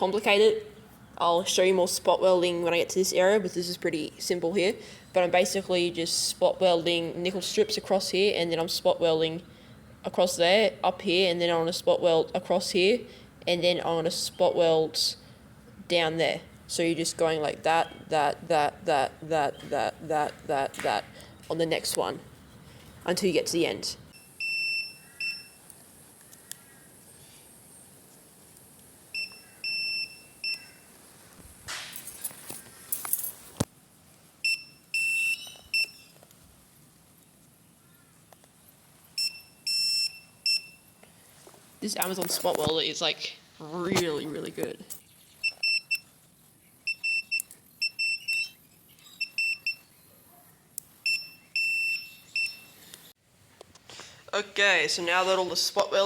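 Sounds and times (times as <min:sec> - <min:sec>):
spot welder beeping: 0:24.1 - 0:25.7, 0:29.2 - 0:30.8, 0:34.4 - 0:36.1, 0:39.2 - 0:41.0, 0:45.4 - 0:46.1, 0:46.8 - 0:49.9, 0:51.0 - 0:52.8.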